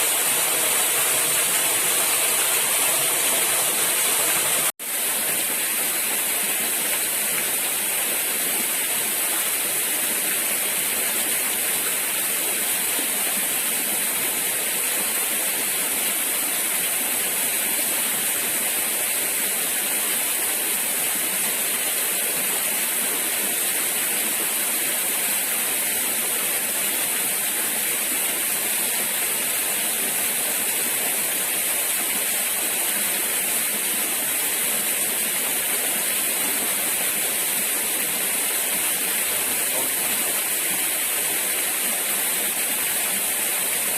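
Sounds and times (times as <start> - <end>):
river water rushing: 0.0 - 5.1.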